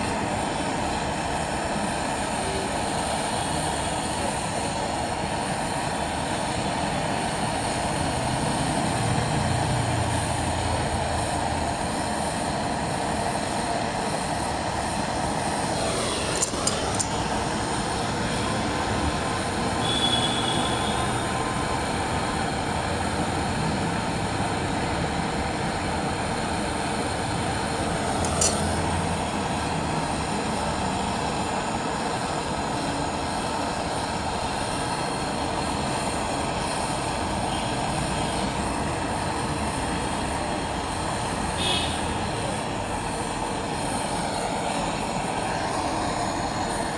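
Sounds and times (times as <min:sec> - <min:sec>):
torch flame rushing: 0:00.0 - 0:41.4, 0:42.4 - 0:46.9
short clicks: 0:16.2 - 0:17.2, 0:28.2 - 0:28.8.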